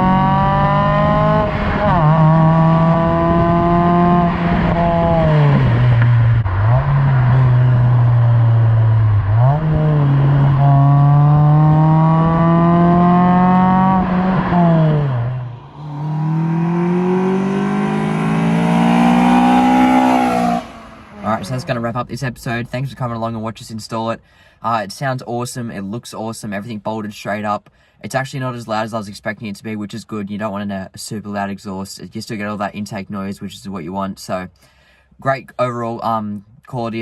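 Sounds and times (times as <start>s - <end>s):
car engine accelerating: 0.0s - 22.0s.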